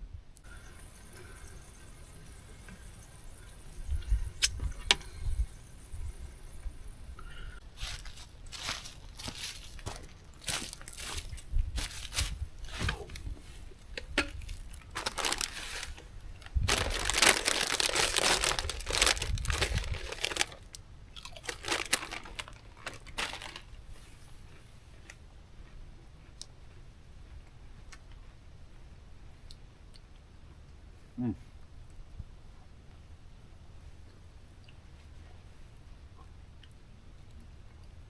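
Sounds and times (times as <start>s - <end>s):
crinkling and crunching: 7.7s - 26.8s.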